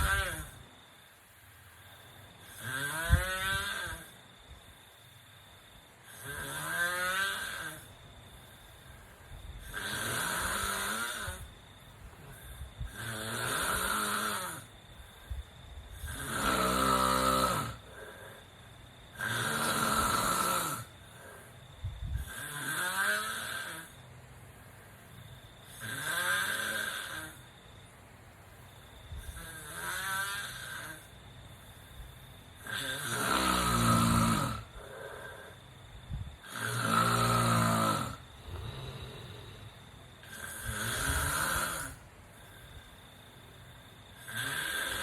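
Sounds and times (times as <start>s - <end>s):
person snoring: 0.0s - 0.6s, 2.4s - 4.2s, 6.0s - 7.9s, 9.6s - 11.5s, 12.2s - 14.7s, 16.0s - 18.5s, 19.1s - 21.5s, 22.1s - 24.0s, 25.7s - 27.4s, 29.2s - 31.1s, 32.6s - 35.7s, 36.4s - 42.8s, 44.2s - 45.0s.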